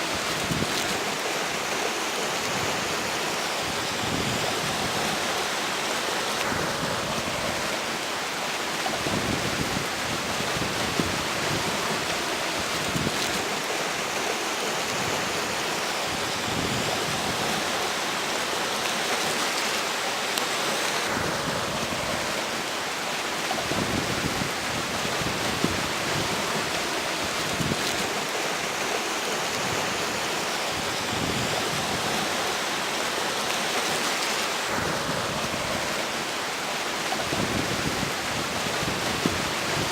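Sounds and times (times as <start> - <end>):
river water rushing: 0.0 - 39.9
strong wind blowing: 8.9 - 12.0, 21.0 - 22.7, 23.4 - 33.0, 34.6 - 36.3, 37.2 - 39.9.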